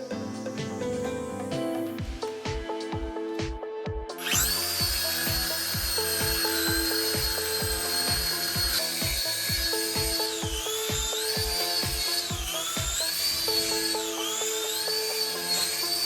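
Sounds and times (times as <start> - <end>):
music with steady beat: 0.0 - 16.0
electric motor whining: 4.1 - 16.0.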